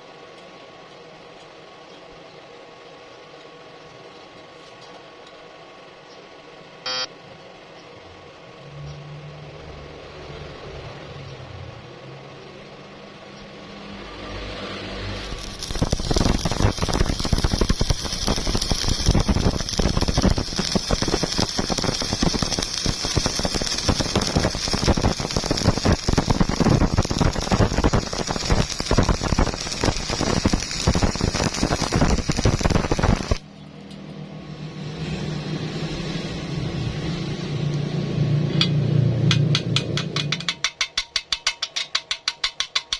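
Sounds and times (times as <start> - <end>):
faint steady hum: 0.0 - 9.6
welding arc crackling: 6.9 - 7.1, 13.6 - 33.4.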